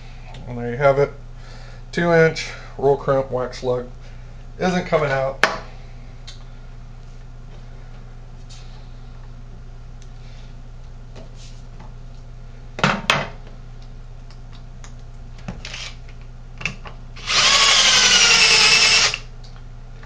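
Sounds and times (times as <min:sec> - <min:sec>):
power drill spinning: 0:15.6 - 0:16.0, 0:17.2 - 0:19.3.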